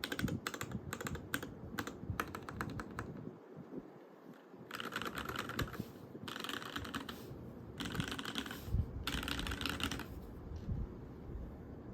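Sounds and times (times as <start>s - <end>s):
mechanical keyboard typing: 0.0s - 3.2s, 4.7s - 7.2s, 7.8s - 10.2s.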